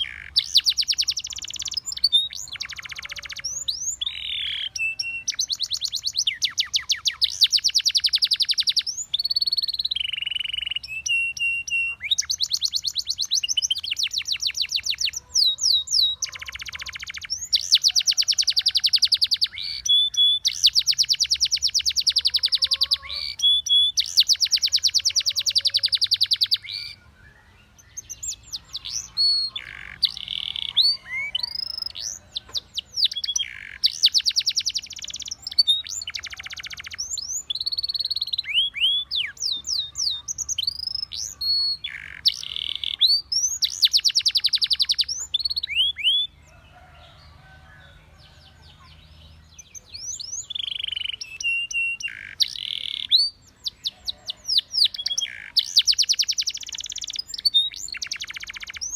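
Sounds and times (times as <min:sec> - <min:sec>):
canary singing trilled phrases: 0:00.0 - 0:46.5, 0:48.8 - 0:58.9.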